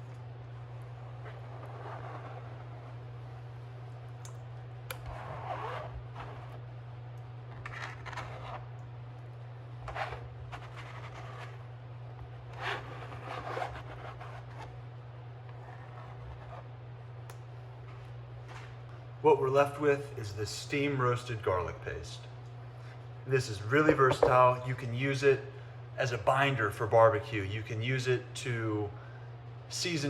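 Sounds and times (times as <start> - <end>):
steady low hum: 0.0 - 30.0
scraper scraping a mesh sieve: 7.5 - 8.7, 9.8 - 11.6, 12.5 - 14.7.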